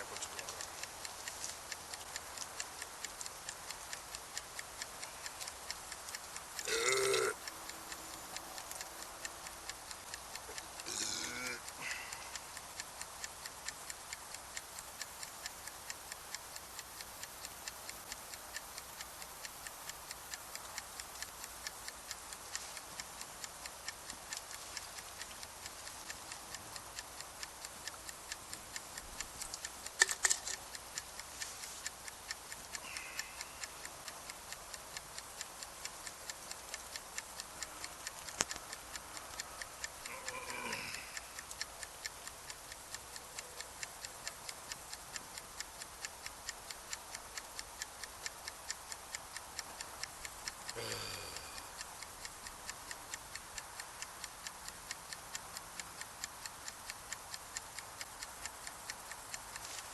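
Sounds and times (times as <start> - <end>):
faint hiss: 0.0 - 59.9
mechanical ticking: 0.0 - 59.9.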